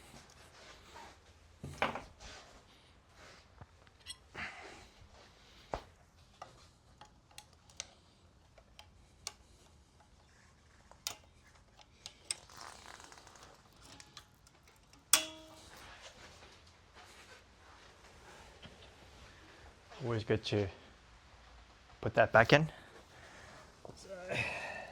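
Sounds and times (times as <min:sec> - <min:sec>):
metallic clicks and taps of tools: 0:03.8 - 0:04.3, 0:06.3 - 0:15.9
tool clanking on metal: 0:13.8 - 0:15.9.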